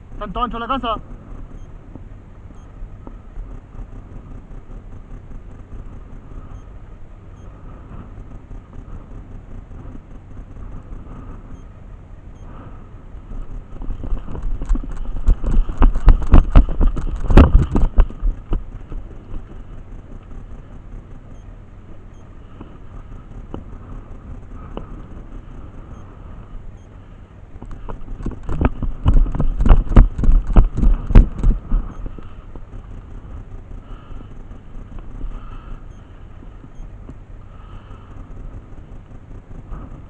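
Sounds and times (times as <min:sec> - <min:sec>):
low steady rumble: 0:00.0 - 0:40.0
rapid thumps and clatter: 0:13.3 - 0:21.4, 0:27.5 - 0:33.6.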